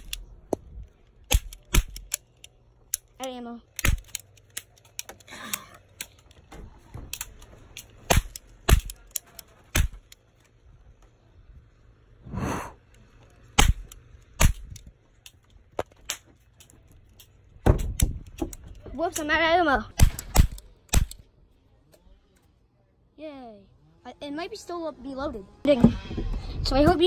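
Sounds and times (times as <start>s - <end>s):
toy cap guns firing: 0.0s - 0.3s, 1.2s - 6.3s, 7.1s - 10.2s, 13.5s - 21.2s.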